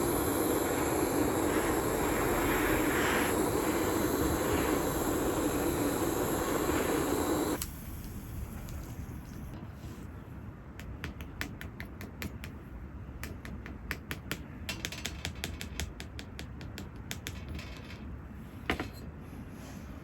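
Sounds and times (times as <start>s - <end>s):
steady low hum: 0.0s - 10.3s.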